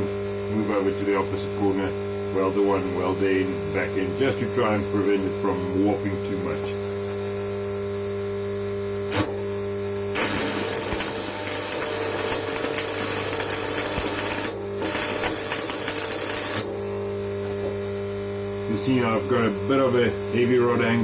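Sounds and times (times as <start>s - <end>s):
electrical hum: 0.0s - 21.0s
welding arc crackling: 9.1s - 9.5s, 10.1s - 17.6s.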